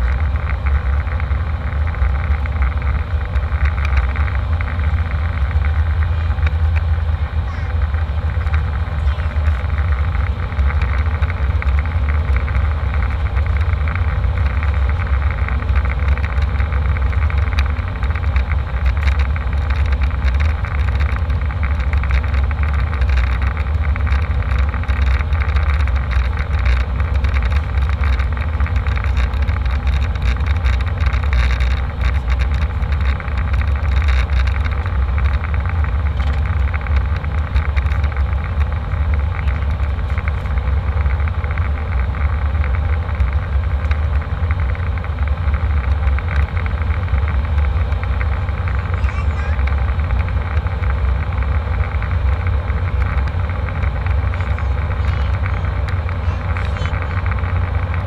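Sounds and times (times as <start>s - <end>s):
faint ticks and rattles: 0.0s - 58.0s
low rumble of engines and airflow: 0.0s - 58.0s.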